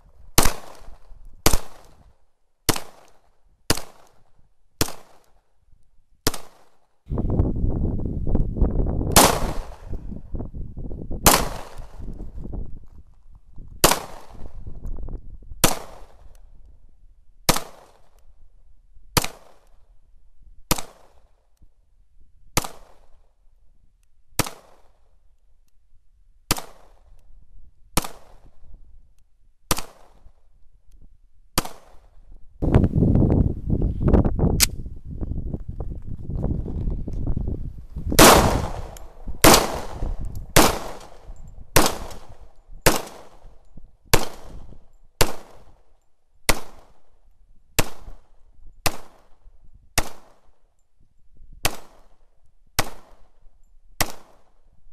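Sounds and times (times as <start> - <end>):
pistol shots at steel targets: 2.7 - 5.4, 6.2 - 6.9, 11.3 - 12.0, 17.5 - 18.2, 20.7 - 21.3, 38.2 - 45.9, 46.5 - 47.2, 47.8 - 49.4, 52.8 - 53.4, 54.0 - 54.6
low rumbling noise: 37.8 - 42.3.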